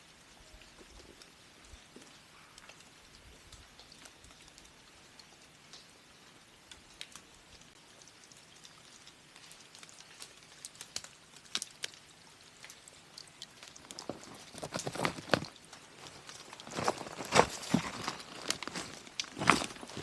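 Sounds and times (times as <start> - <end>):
light ticks: 0.4 - 16.8
footsteps crunching over ground: 13.6 - 20.0.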